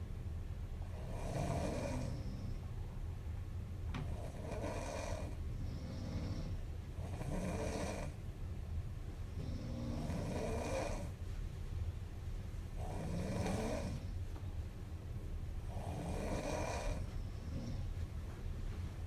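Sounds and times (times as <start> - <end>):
steady low hum: 0.0 - 19.0
woman snoring: 0.9 - 2.6, 4.1 - 8.2, 9.4 - 11.1, 12.8 - 14.2, 15.7 - 17.9.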